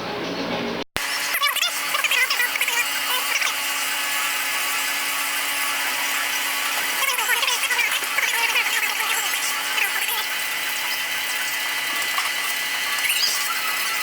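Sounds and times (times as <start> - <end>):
steady hum: 0.0 - 14.0
power tool whirring: 1.0 - 14.0.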